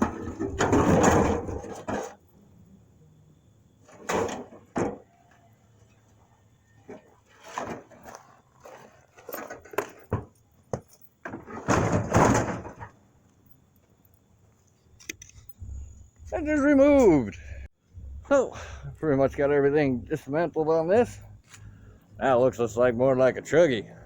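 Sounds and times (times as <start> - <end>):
clattering metal scrape: 0.0 - 2.2, 3.8 - 5.0, 6.9 - 10.3, 11.2 - 12.9
sheet metal clanking and thumping: 0.0 - 2.2, 11.2 - 12.9.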